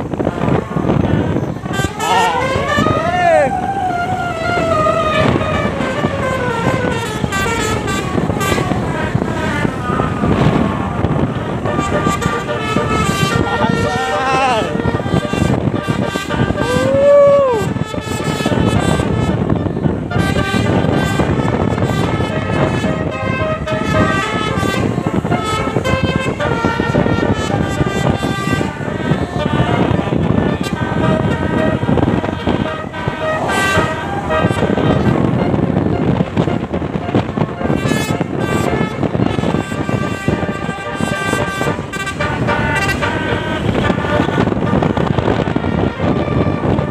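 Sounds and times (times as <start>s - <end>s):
bus musical horn tune: 0.0s - 46.9s
engine and road rumble: 0.0s - 46.9s.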